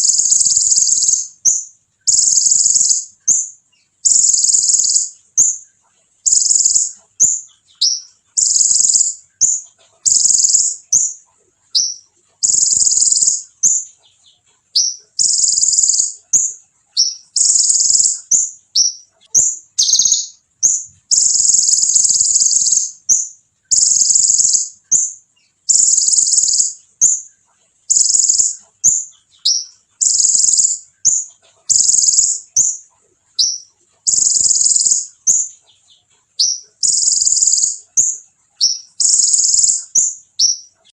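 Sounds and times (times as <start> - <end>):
bird singing high trills: 0.0 - 5.6, 6.2 - 27.3, 27.9 - 32.8, 33.4 - 40.9.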